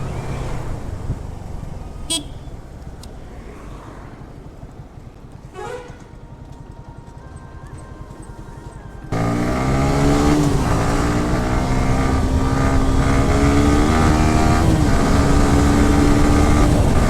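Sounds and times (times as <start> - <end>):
wind noise: 0.0 - 7.0, 9.8 - 17.0
motorcycle engine running: 0.0 - 17.0
road noise: 0.0 - 17.0.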